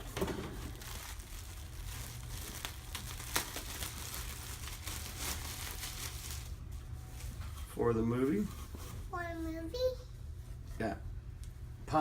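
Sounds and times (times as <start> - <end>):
packaging crinkling and rustling: 0.0 - 7.4
steady low hum: 0.0 - 12.0.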